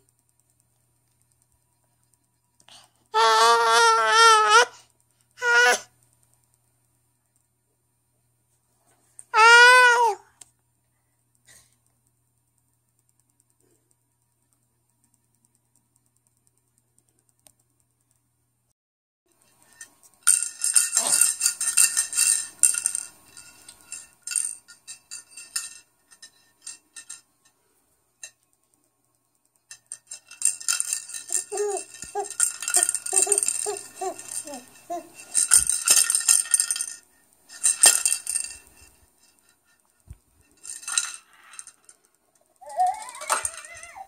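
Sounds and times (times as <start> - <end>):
rattling and jingling: 19.4 - 27.5, 29.6 - 44.0
baby babbling: 31.3 - 35.2, 42.6 - 44.0.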